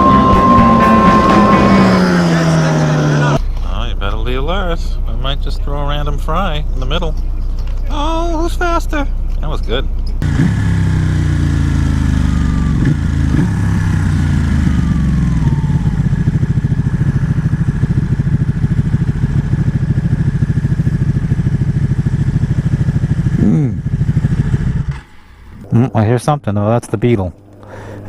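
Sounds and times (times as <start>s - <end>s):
motorcycle engine on the move: 0.0s - 26.2s.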